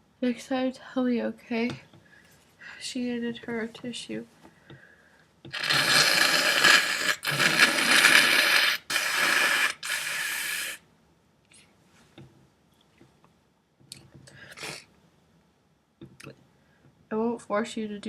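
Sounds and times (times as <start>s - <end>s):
person blowing nose: 5.5s - 10.8s, 14.5s - 14.9s
short sniff: 5.5s - 10.8s, 14.4s - 14.9s.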